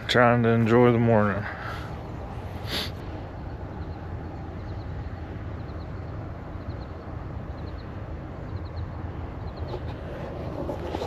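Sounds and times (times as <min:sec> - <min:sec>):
steady low rumble: 0:00.0 - 0:11.0
faint high chirps: 0:03.6 - 0:09.7.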